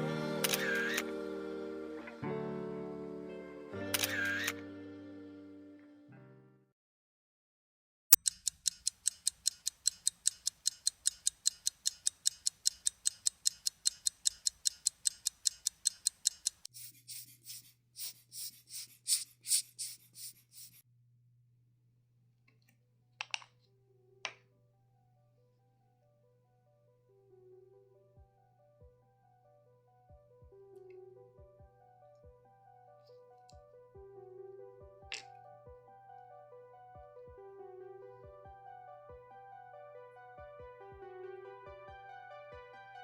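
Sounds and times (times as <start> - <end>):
single clicks: 0.4 - 1.0, 3.9 - 4.6
mechanical watch ticking: 8.1 - 16.7.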